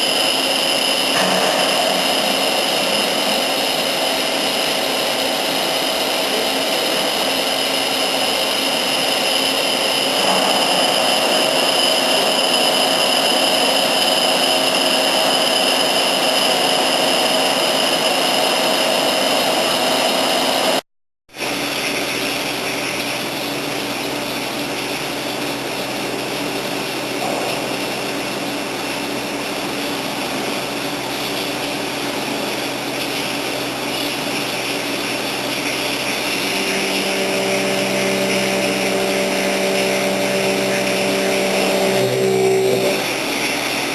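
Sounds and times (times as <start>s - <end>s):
machine motor with high whine: 0.0s - 20.8s, 24.0s - 43.9s.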